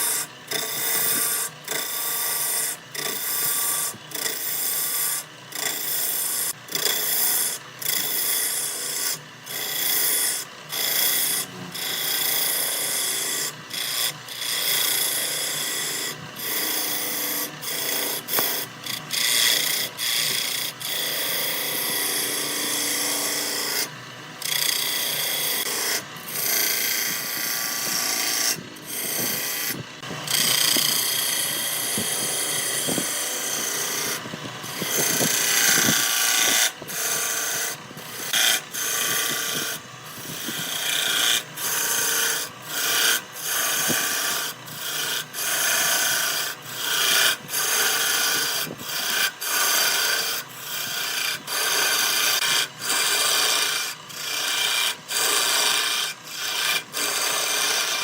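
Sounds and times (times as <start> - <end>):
tool scraping wood on a lathe: 0.0 - 58.0.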